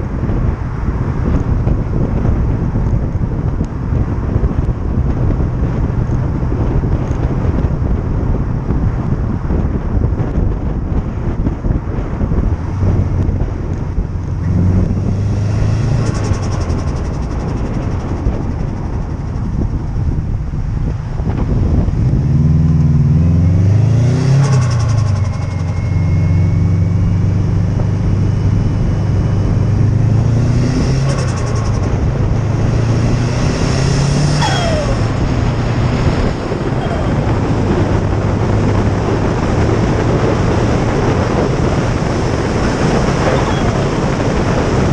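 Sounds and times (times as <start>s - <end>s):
car engine revving: 12.6s - 19.7s, 20.8s - 44.9s
turbo flutter: 15.8s - 19.8s
falling turbo whistle: 34.3s - 35.2s.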